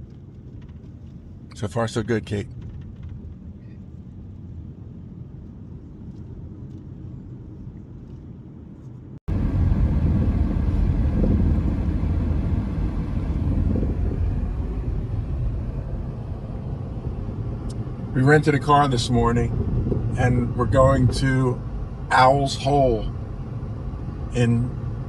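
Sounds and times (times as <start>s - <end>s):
car engine and road noise: 0.0s - 25.0s.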